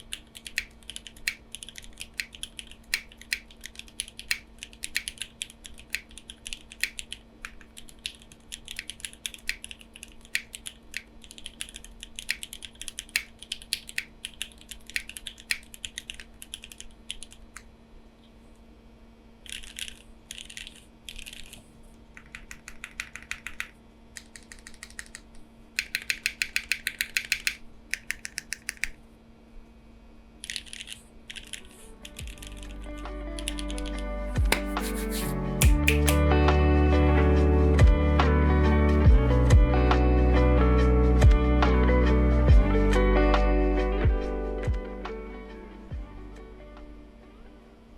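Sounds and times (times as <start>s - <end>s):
mechanical keyboard typing: 0.0s - 17.4s, 19.5s - 21.5s, 22.2s - 29.0s, 30.4s - 32.7s, 33.4s - 36.2s.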